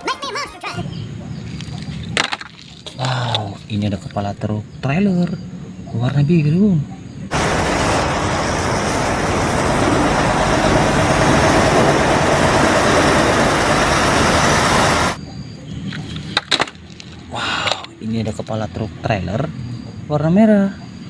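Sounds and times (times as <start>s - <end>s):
truck engine running: 7.3s - 15.2s.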